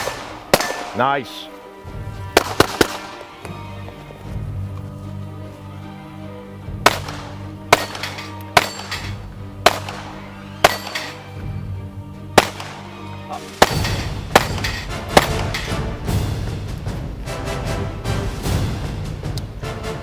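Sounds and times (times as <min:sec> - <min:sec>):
handgun shots: 0:00.0 - 0:01.0, 0:06.9 - 0:11.2, 0:12.4 - 0:12.9, 0:13.6 - 0:15.8
background music: 0:00.0 - 0:20.0.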